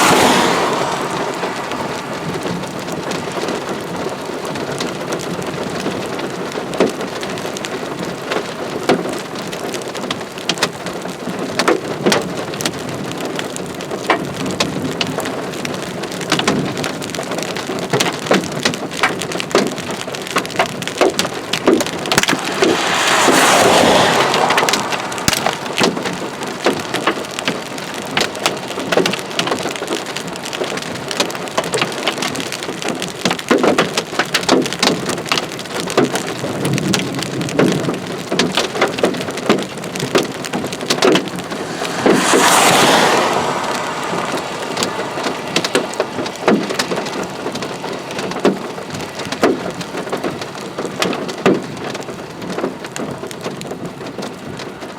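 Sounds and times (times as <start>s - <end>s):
heavy rain hissing: 0.0s - 4.1s, 21.8s - 32.4s, 41.2s - 49.2s
sharp raindrop impacts: 0.0s - 7.8s, 20.4s - 54.9s.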